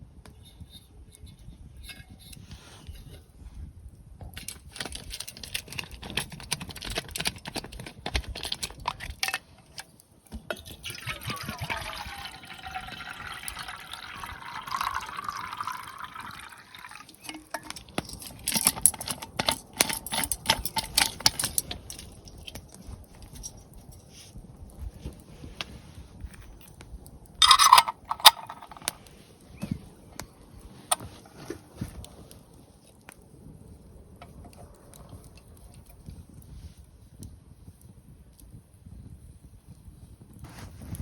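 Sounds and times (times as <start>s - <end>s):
camp gear clicking and clinking: 4.2s - 26.8s, 27.4s - 33.3s
water pouring into metal vessel: 10.5s - 22.1s.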